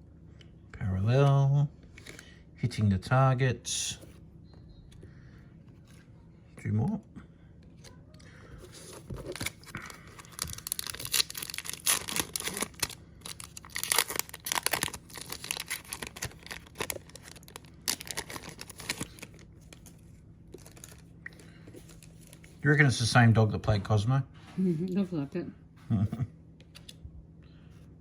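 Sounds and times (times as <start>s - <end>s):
foil wrapper tearing and crinkling: 9.2s - 21.1s.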